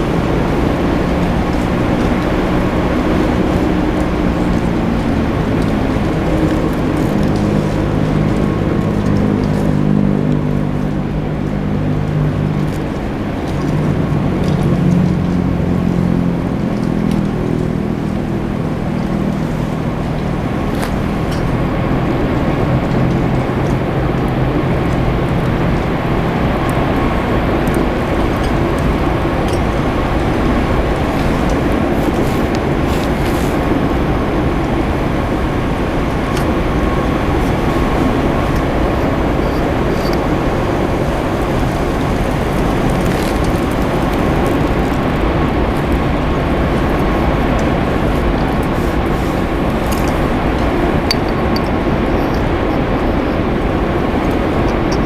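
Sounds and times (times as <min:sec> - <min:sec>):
constant rushing noise: 0:00.0 - 0:55.0
engine running: 0:00.0 - 0:55.0.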